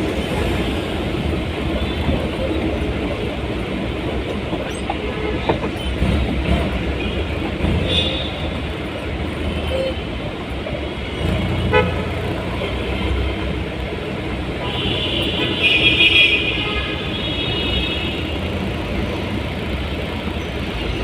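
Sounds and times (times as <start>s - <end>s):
vehicle road and engine noise: 0.0s - 21.0s
car horn toots: 11.6s - 12.9s.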